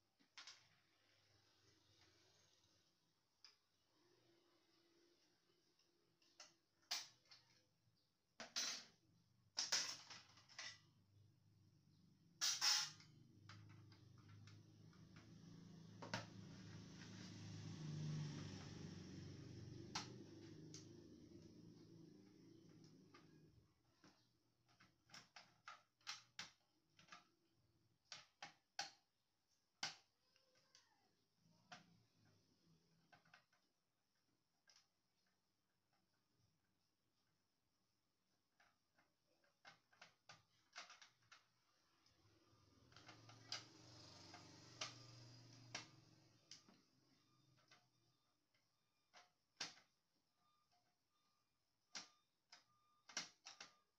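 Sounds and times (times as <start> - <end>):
plastic parts clicking: 19.7 - 27.4, 38.6 - 42.2.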